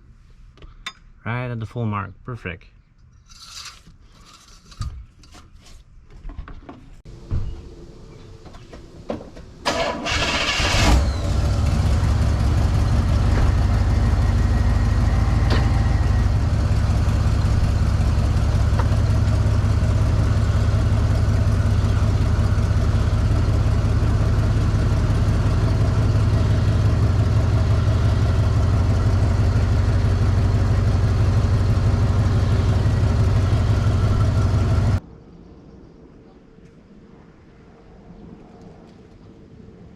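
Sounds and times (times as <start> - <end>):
car engine cranking and idling: 7.1 - 35.0.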